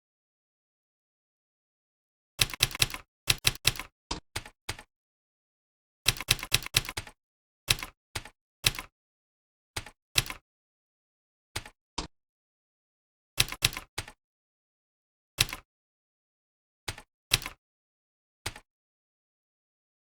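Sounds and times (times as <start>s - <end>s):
computer keyboard typing: 2.4s - 4.9s, 6.1s - 8.9s, 9.8s - 10.4s, 13.4s - 14.2s, 15.4s - 15.6s, 16.9s - 17.6s.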